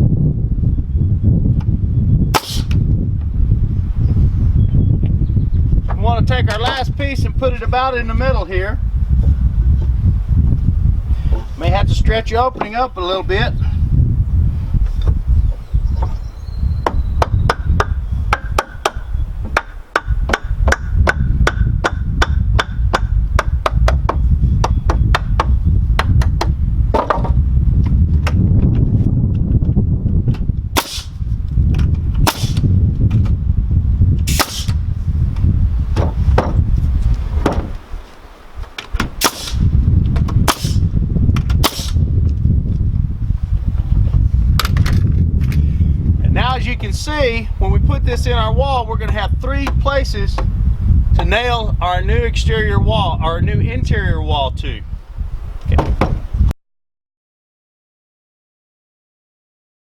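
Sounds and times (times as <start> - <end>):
steady low rumble: 0.0 - 37.8, 39.0 - 56.6
nail gun shots: 2.4 - 2.8, 30.8 - 31.2, 32.2 - 32.7, 34.3 - 34.8, 39.2 - 39.6, 40.5 - 40.8, 41.6 - 42.0.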